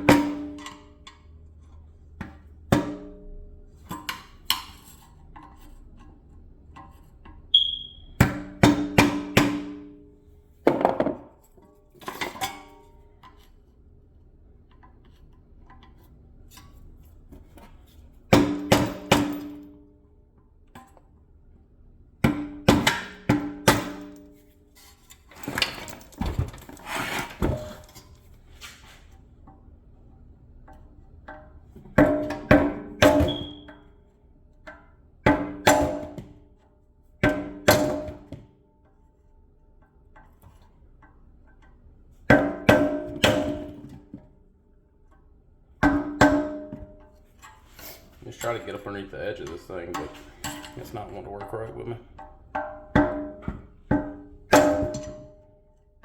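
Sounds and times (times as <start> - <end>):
tool scraping metal: 26.7 - 28.0.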